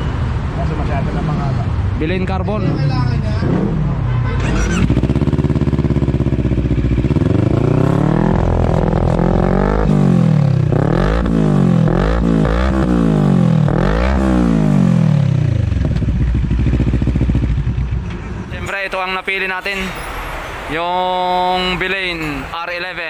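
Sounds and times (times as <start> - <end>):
motorcycle engine revving: 2.4 - 18.5.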